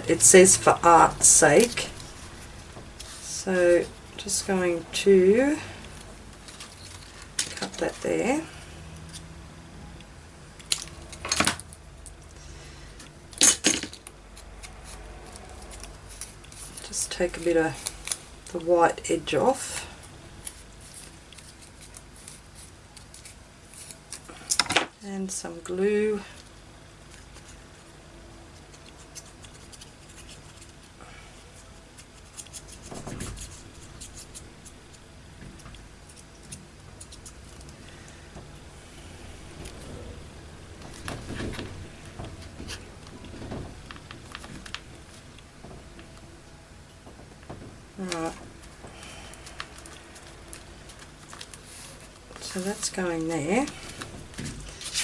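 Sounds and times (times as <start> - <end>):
paper rustling: 1.2 - 4.1, 19.8 - 24.5, 28.6 - 38.3, 48.0 - 55.0
scissors cutting paper: 28.6 - 35.0, 54.7 - 55.0.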